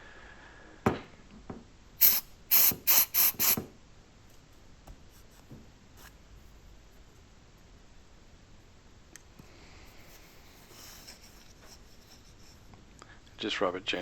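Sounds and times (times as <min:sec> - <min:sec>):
aerosol spray hissing: 0:02.0 - 0:03.6.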